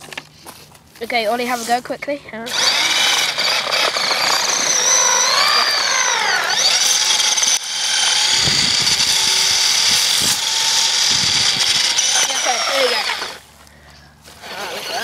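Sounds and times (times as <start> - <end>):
toy car electric motor whining: 2.5 - 13.4, 14.3 - 15.0.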